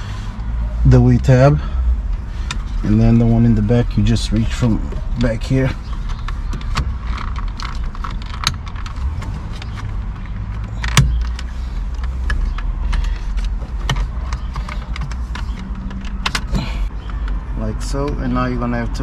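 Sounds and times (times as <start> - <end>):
plastic parts and tools clicking: 5.8 - 17.4.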